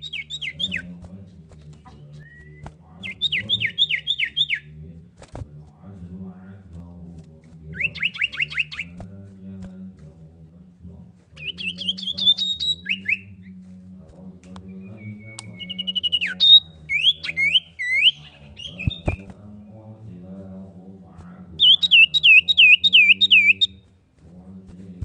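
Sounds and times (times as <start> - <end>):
bird singing whistled notes: 0.0 - 0.9, 1.8 - 4.7, 7.8 - 9.0, 11.4 - 13.6, 14.6 - 19.3, 21.6 - 23.8.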